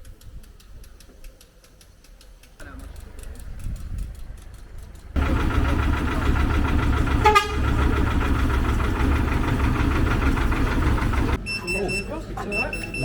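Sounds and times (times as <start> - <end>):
vehicle engine running: 2.6 - 11.4
brief beep: 11.4 - 13.0.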